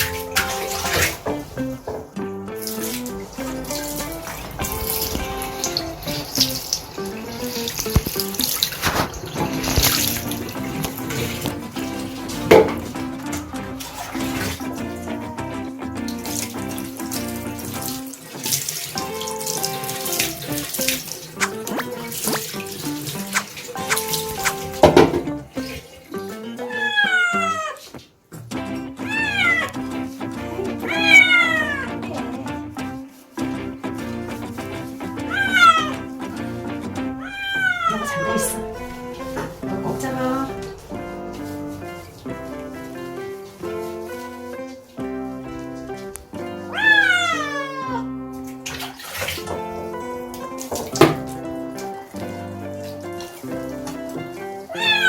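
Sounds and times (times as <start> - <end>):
background music: 0.0 - 55.0
tap water splashing into sink: 0.0 - 55.0
kitten yowling: 26.6 - 27.8, 29.0 - 29.8, 30.7 - 32.0, 35.2 - 36.1, 37.2 - 38.8, 46.6 - 48.1, 54.7 - 55.0.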